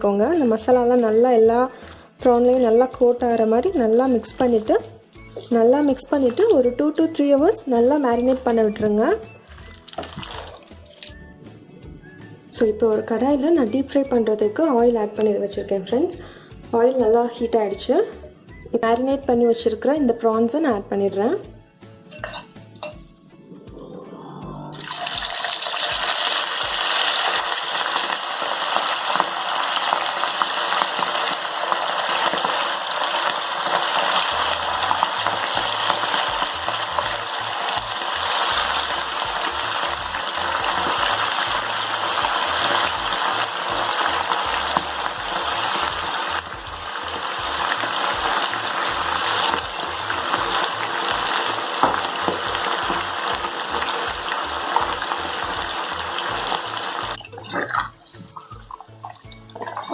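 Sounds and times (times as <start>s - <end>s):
prawns deep-frying in oil: 7.5s - 11.2s, 24.8s - 59.9s.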